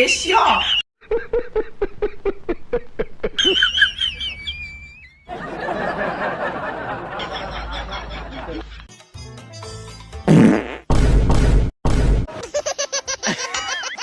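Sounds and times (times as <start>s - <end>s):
snickering laughter: 1.0s - 8.9s, 12.4s - 14.0s.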